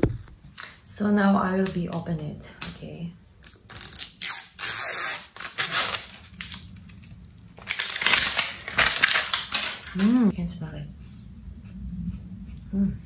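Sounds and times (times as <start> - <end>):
plastic packaging crinkling and tearing: 3.4 - 10.2.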